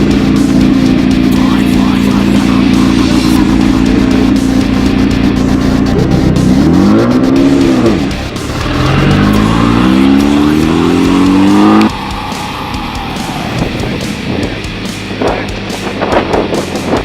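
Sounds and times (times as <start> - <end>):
buggy engine at full throttle: 0.0 - 17.0.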